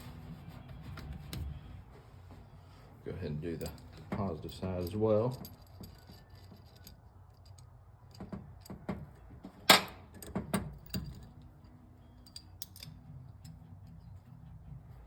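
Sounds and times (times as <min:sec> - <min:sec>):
metal clinks of hand tools: 0:03.5 - 0:07.6.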